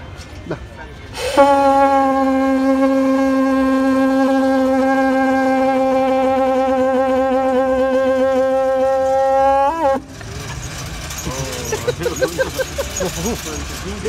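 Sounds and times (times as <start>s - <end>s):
conch shell blown: 1.2s - 10.1s.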